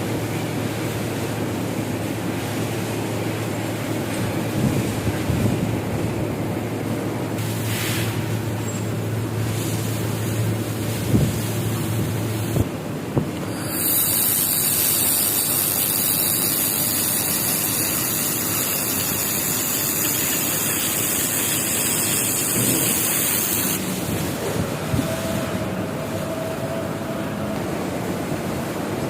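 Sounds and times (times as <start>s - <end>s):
low machine hum: 0.0s - 29.0s
gas hissing from welding head: 13.3s - 24.0s.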